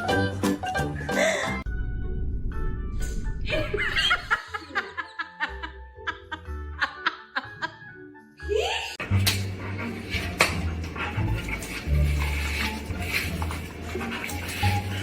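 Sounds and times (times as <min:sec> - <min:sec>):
background music: 0:00.0 - 0:15.0
laughter: 0:03.4 - 0:08.0.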